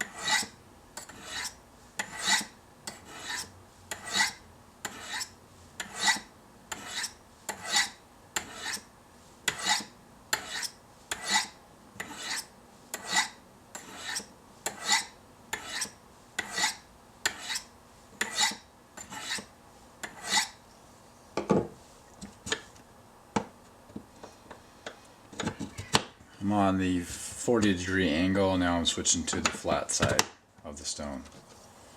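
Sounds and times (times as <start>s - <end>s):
knife scraping on ceramic stones: 0.0s - 8.9s, 9.5s - 20.6s.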